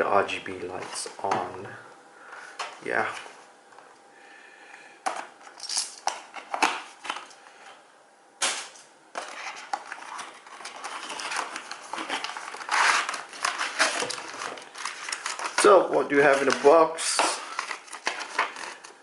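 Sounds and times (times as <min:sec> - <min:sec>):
packaging rustling: 0:09.2 - 0:19.0.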